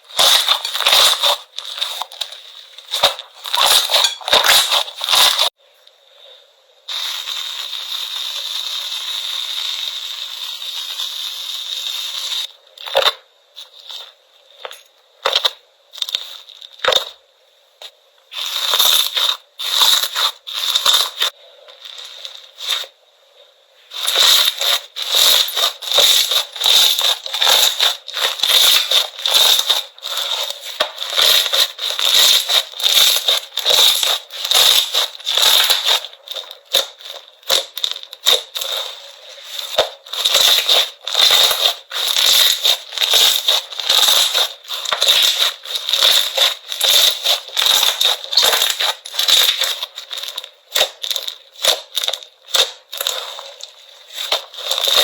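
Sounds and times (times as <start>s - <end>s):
slime crackling and popping: 0.0s - 5.6s, 18.3s - 22.9s, 23.9s - 55.0s.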